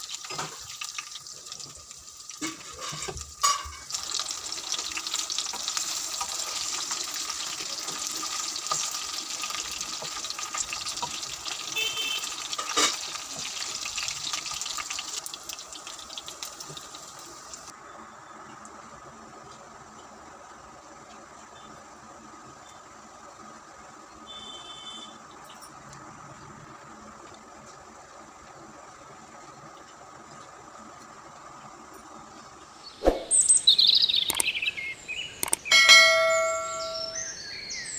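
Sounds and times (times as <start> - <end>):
chicken sizzling in hot oil: 0.0 - 17.8.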